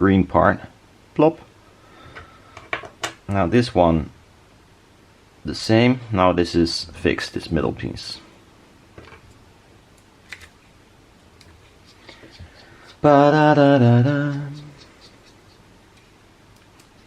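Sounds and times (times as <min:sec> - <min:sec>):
man singing a short tune: 0:13.0 - 0:14.8.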